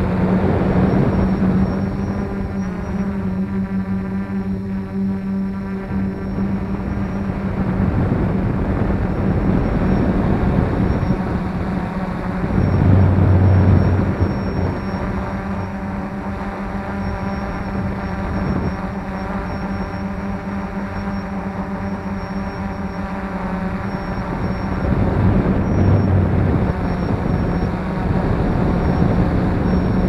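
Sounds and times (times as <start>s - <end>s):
quadcopter motors humming: 0.0s - 30.0s.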